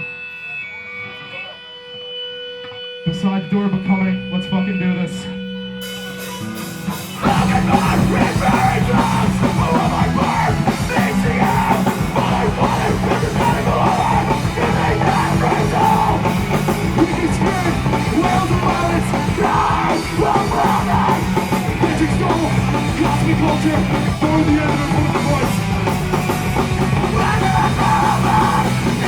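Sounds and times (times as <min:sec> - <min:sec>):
heavy rock band playing: 0:00.0 - 0:29.0
yelled vocals: 0:06.2 - 0:29.0.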